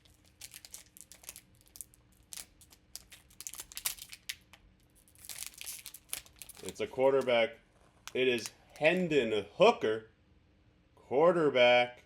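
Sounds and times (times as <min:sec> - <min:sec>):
plastic wrapper crinkling: 0:00.0 - 0:09.0.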